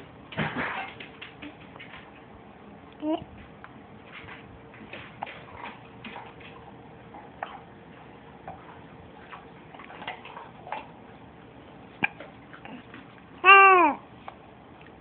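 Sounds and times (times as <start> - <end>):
baby hiccuping: 13.4 - 14.0.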